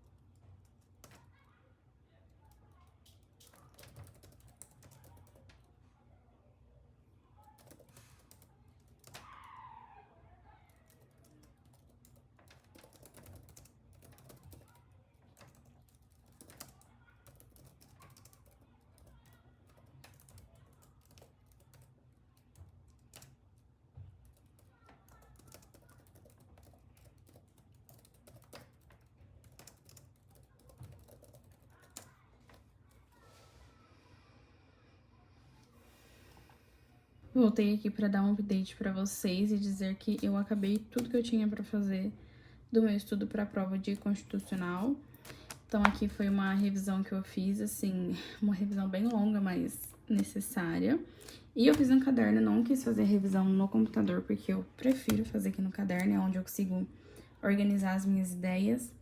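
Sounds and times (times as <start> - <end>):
keyboard typing: 2.4 - 5.7, 7.4 - 9.3, 10.7 - 32.7, 39.9 - 41.3, 43.9 - 46.8, 49.0 - 50.6, 54.8 - 56.4.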